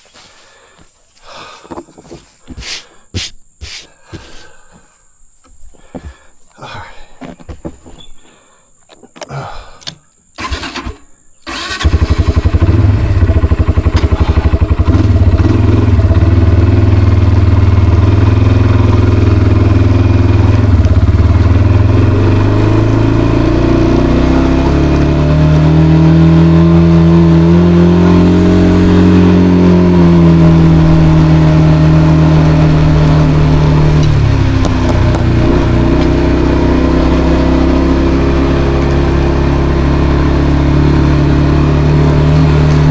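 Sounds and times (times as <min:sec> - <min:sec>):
atv engine starting and running: 0:08.9 - 0:42.9.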